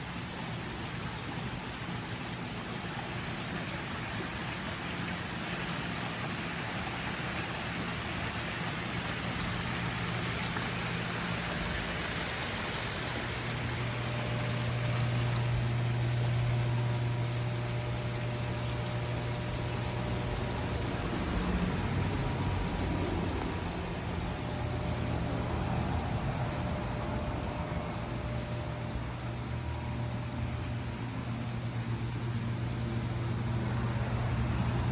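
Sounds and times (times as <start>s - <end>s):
low mechanical hum: 0.0s - 34.9s
water rushing and spraying: 0.1s - 27.9s.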